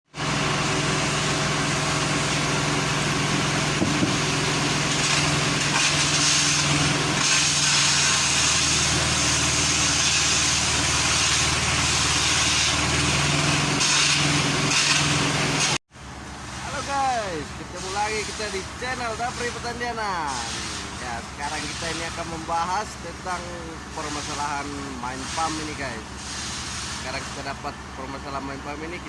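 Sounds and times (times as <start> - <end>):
heavy engine running: 0.1 - 29.0
hiss: 5.0 - 15.8, 16.6 - 27.7.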